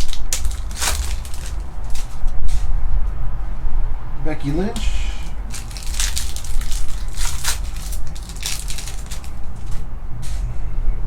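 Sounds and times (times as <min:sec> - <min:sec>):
cards scraping and rustling: 0:00.0 - 0:02.1, 0:05.5 - 0:09.9
steady low hum: 0:00.0 - 0:11.0.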